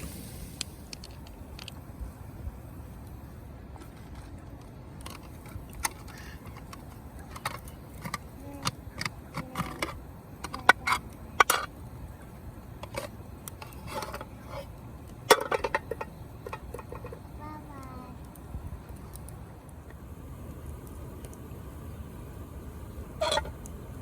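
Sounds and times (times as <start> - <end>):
faint voices: 6.0 - 11.2, 17.0 - 18.4.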